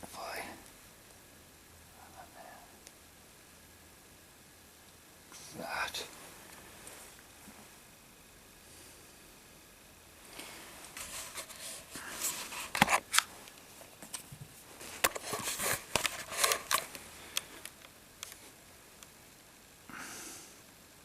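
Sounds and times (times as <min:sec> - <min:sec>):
plastic figure clicks and scrapes: 0:12.5 - 0:13.3, 0:15.0 - 0:16.9.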